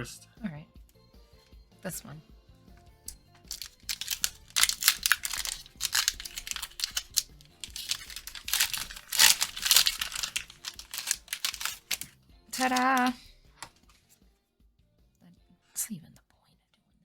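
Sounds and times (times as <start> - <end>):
foil wrapper tearing and crinkling: 3.4 - 14.0.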